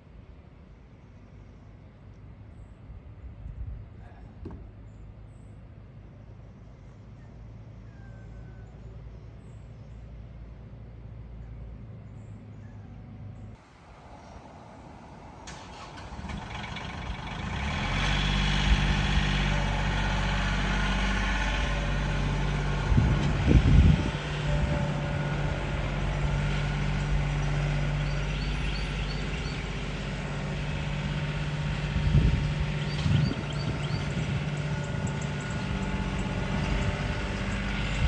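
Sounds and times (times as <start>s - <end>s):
heavy vehicle engine idling: 10.6s - 38.0s.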